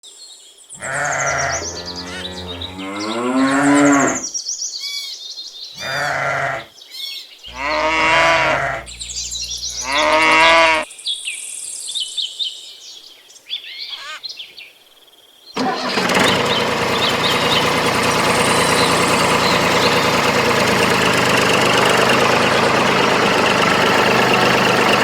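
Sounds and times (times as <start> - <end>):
birds chirping: 0.8 - 4.3, 5.7 - 6.7, 7.5 - 10.8, 15.6 - 25.0
cows mooing: 0.8 - 4.3, 5.8 - 6.7, 7.5 - 10.8
sheep bleating: 0.8 - 4.3, 5.8 - 6.7, 7.5 - 10.9.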